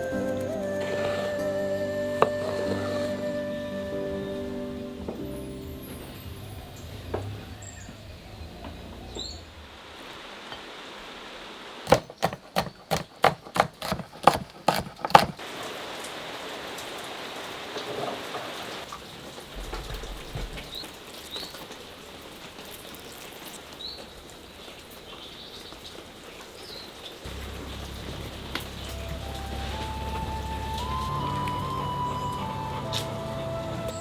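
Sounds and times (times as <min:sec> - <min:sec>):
steady rain: 0:00.0 - 0:11.9, 0:15.4 - 0:34.0
sharp knocks: 0:11.9 - 0:15.4.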